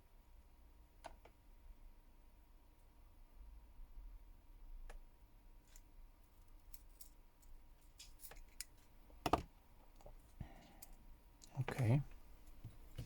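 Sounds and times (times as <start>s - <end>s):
faint clicks of small parts: 5.6s - 8.9s, 9.9s - 11.8s.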